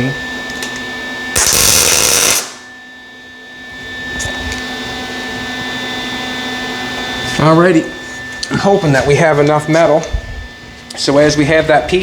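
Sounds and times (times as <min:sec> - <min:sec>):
welder crackling buzz: 0:00.0 - 0:02.7
steady electrical hum: 0:00.0 - 0:12.0.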